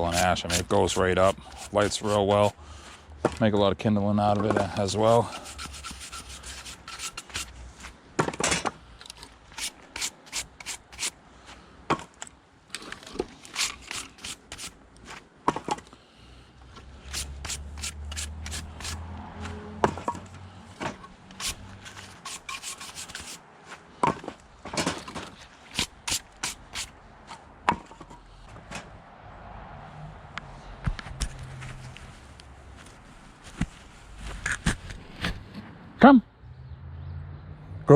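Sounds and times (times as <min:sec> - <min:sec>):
wood rubbing: 0:00.0 - 0:02.5, 0:04.5 - 0:07.9, 0:09.0 - 0:11.1, 0:12.8 - 0:15.2, 0:17.0 - 0:19.0, 0:20.8 - 0:23.4, 0:24.0 - 0:28.2.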